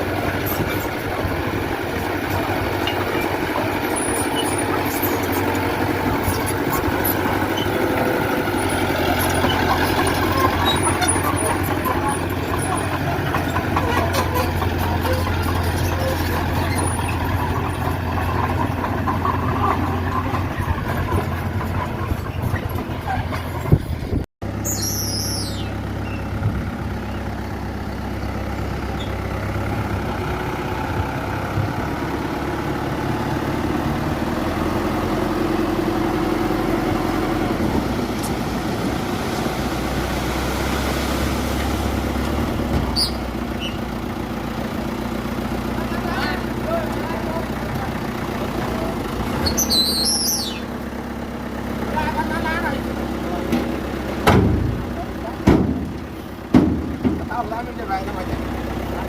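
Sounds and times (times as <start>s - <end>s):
heavy machinery diesel engine: 0.0s - 59.0s
falling high squeal: 24.6s - 26.2s, 49.4s - 50.7s.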